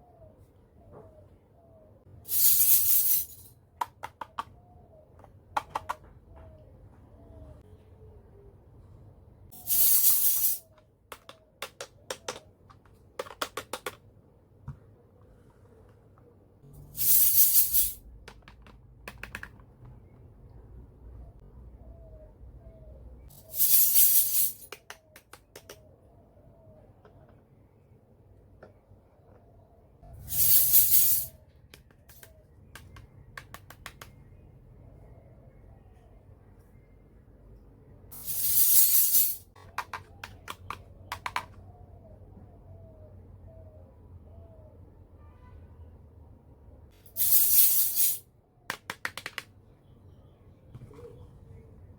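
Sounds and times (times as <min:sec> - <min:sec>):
toy kitchen pieces clicking: 0:11.1 - 0:14.0, 0:39.6 - 0:41.6.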